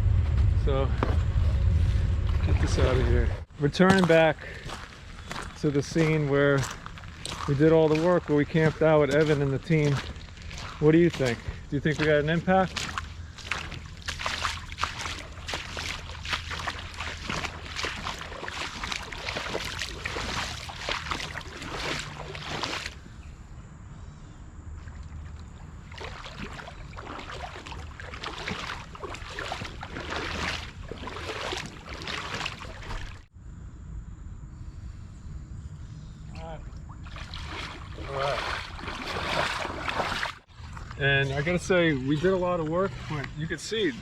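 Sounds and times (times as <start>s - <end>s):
water splashing in river: 4.1s - 23.0s, 24.8s - 33.3s, 36.7s - 41.1s.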